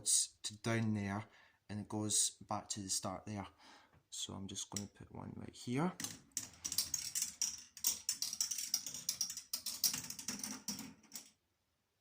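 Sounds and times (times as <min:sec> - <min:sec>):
ball rattling down plastic track: 0:06.0 - 0:11.4.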